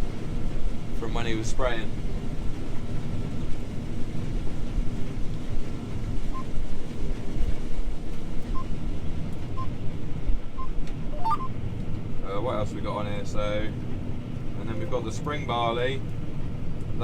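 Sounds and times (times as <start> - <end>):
combine harvester drone in cab: 0.0 - 17.0
short high beeps: 10.6 - 11.5.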